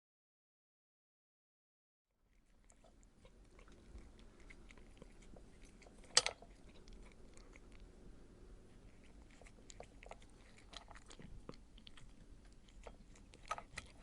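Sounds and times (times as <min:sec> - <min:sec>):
soft chewing: 0:02.3 - 0:14.0
mouth and utensil clicks: 0:05.8 - 0:07.0.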